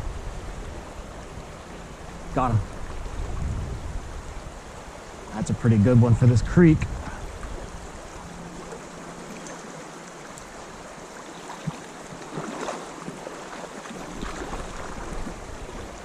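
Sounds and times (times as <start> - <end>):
creek water rushing: 0.0 - 16.0
faint splashes: 7.0 - 16.0.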